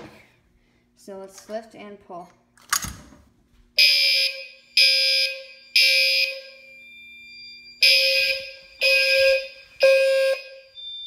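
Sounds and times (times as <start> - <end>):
fire alarm horn blasts: 3.8 - 11.0.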